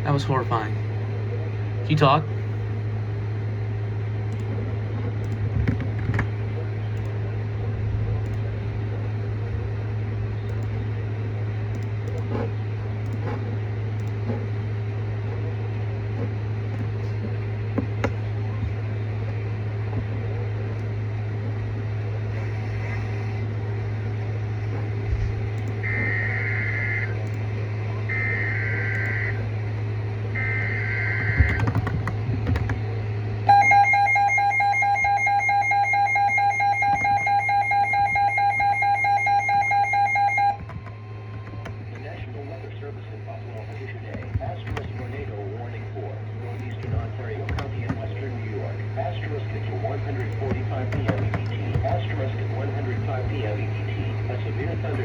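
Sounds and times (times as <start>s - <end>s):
radio hum: 0.0s - 55.0s
warbling digital data tones: 33.5s - 40.6s.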